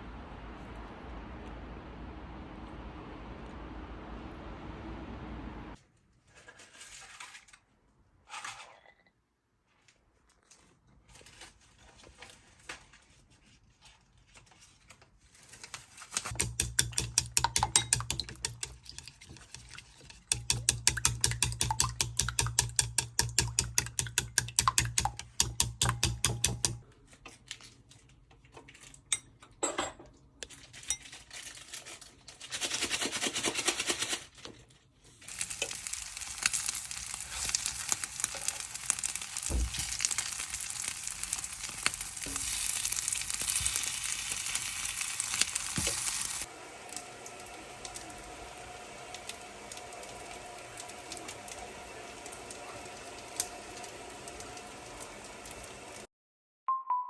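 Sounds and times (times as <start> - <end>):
stirring strokes in a pot: 15.4 - 26.8
food sizzling in a frying pan: 35.2 - 56.1.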